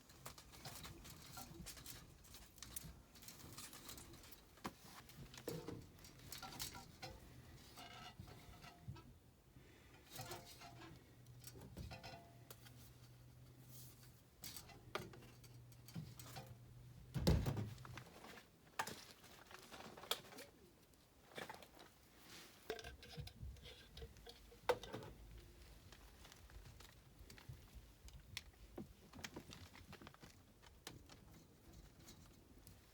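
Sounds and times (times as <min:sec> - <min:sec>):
handling clicks taps and rustles: 0:22.7 - 0:32.9.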